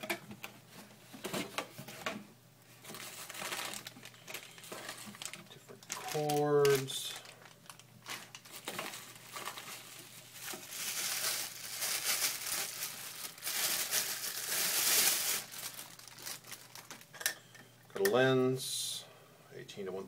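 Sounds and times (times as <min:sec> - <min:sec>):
plastic packaging crinkling: 0:02.7 - 0:17.2.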